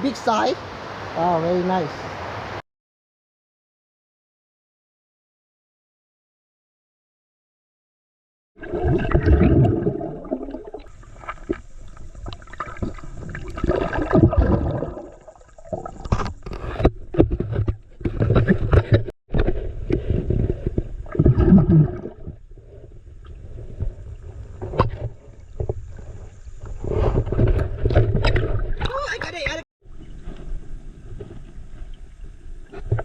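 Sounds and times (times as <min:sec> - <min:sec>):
water sloshing and gurgling: 0:08.6 - 0:33.0
handling knocks and scrapes: 0:15.8 - 0:21.3, 0:22.7 - 0:29.2.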